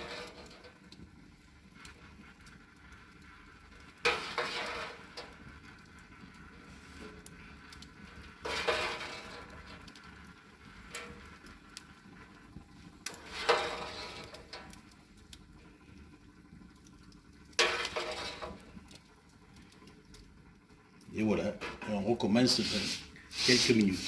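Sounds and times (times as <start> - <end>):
metal spoon scraping a drip pan: 4.1 - 5.4, 8.4 - 9.8, 13.1 - 14.7, 17.6 - 18.6.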